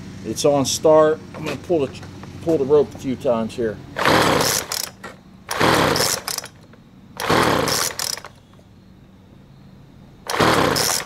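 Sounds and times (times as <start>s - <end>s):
engine turning over: 3.9s - 8.4s, 10.2s - 11.0s
recoil starter pulls: 4.0s - 8.4s, 10.3s - 11.0s.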